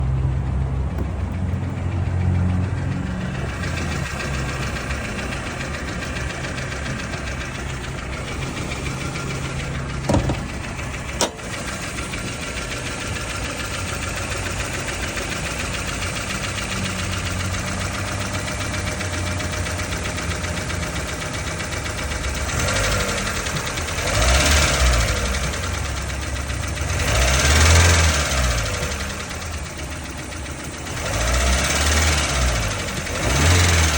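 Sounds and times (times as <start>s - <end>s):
car engine running and revving: 0.0s - 33.9s
engine clicking noise: 0.0s - 33.9s
sharp knocks: 10.0s - 11.6s.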